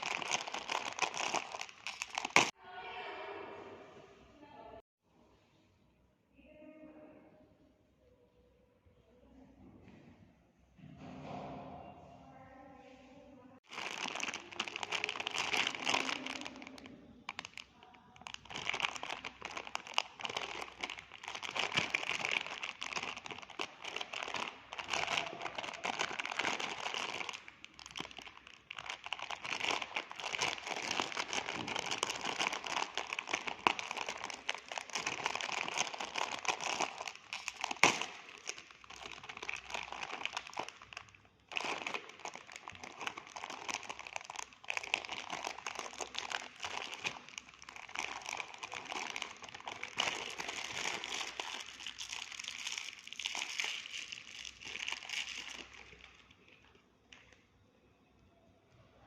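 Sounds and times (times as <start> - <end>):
packaging crinkling: 0.0 - 2.6, 13.6 - 57.4.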